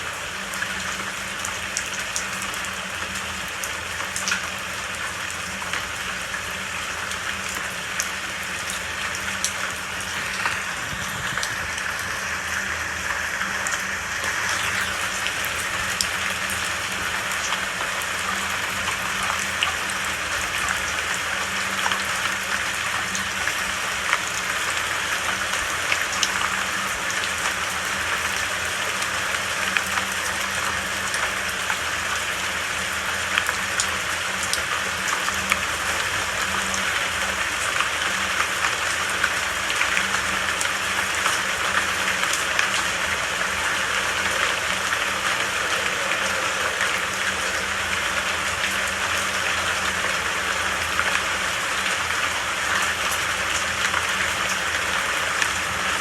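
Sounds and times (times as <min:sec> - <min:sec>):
steady rain: 0:00.0 - 0:56.0
raindrop ticks: 0:00.4 - 0:05.9.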